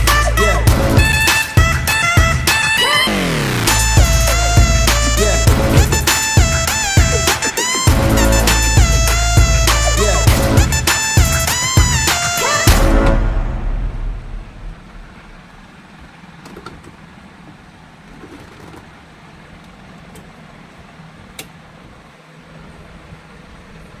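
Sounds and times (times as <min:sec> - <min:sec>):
background music: 0:00.0 - 0:15.0
washing machine humming: 0:03.8 - 0:12.7, 0:14.4 - 0:24.0.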